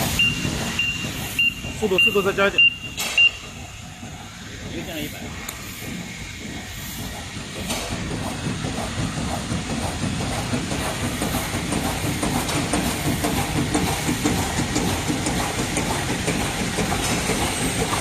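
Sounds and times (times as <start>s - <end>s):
packing machine clattering: 0.0s - 3.6s, 6.6s - 18.0s.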